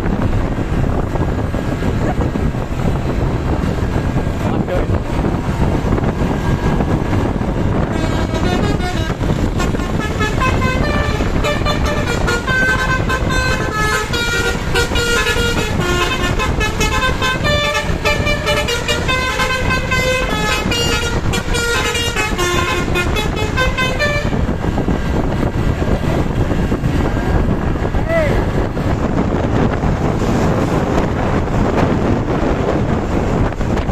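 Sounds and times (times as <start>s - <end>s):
steady loud rumble: 0.0s - 33.9s
bus horn playing melody: 7.7s - 24.7s.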